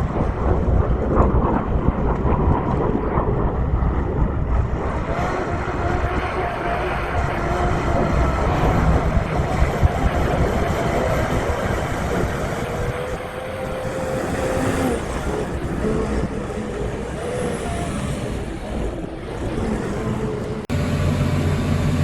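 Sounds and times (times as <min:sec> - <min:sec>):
tractor engine under load: 0:07.8 - 0:22.0.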